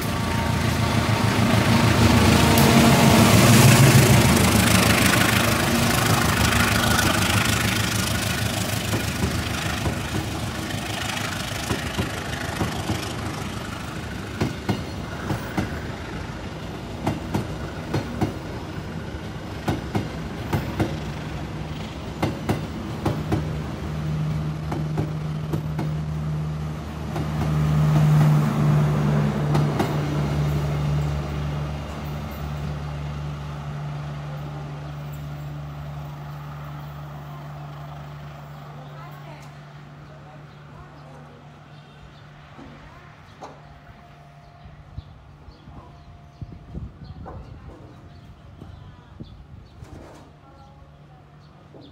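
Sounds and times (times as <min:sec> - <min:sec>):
diesel locomotive engine: 0:00.0 - 0:51.9
train wheels clacking over rail joints: 0:03.7 - 0:15.9, 0:19.4 - 0:21.1, 0:21.8 - 0:23.6, 0:24.6 - 0:26.1.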